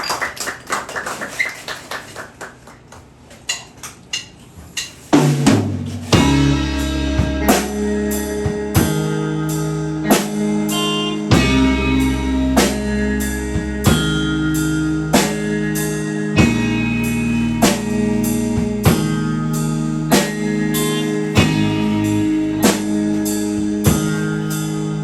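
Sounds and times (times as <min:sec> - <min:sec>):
heavy drum hit: 0:05.2 - 0:09.0
rock band playing: 0:06.0 - 0:25.0.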